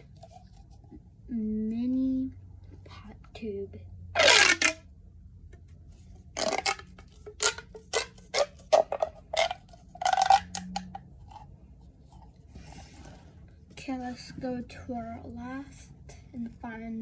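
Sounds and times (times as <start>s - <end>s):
plastic pop tube popping: 4.2s - 4.8s, 6.4s - 11.4s.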